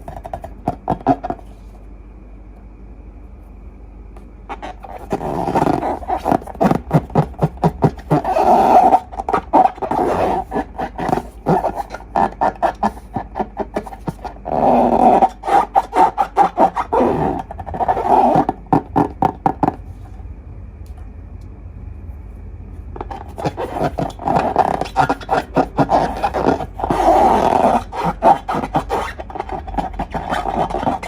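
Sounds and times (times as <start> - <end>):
balloon squeaks: 4.5 - 19.8, 23.0 - 31.0.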